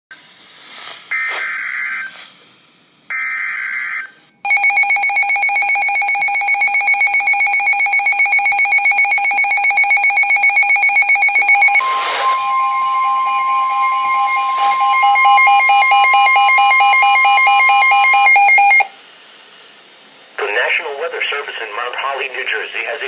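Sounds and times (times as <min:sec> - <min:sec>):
harsh electronic alert tone: 0:04.5 - 0:18.9
warbling digital data bursts: 0:10.6 - 0:18.9.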